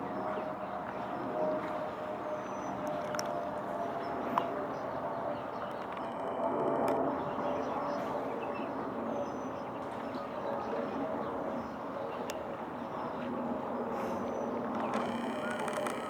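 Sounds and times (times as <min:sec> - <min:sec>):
clicks: 0:14.8 - 0:16.0.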